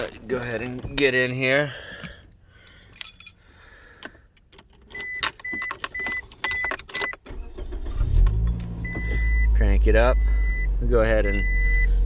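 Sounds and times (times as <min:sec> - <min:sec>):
keys jangling: 0:02.0 - 0:04.0, 0:04.6 - 0:09.4
car engine starting and idling: 0:04.1 - 0:12.0
car warning chime beeping: 0:04.9 - 0:12.0.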